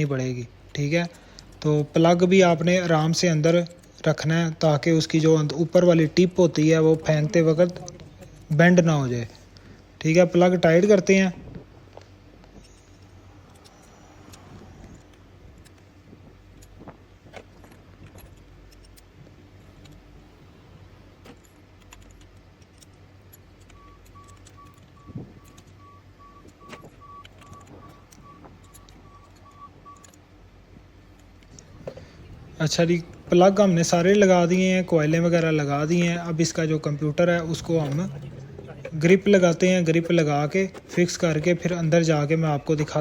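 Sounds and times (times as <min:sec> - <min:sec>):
faint steady hum: 0:00.0 - 0:43.0
faint short beeps: 0:23.7 - 0:30.2.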